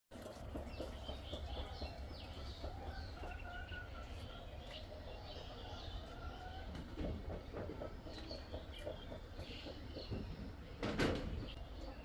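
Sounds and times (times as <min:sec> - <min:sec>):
chicks chirping: 0:00.2 - 0:06.9.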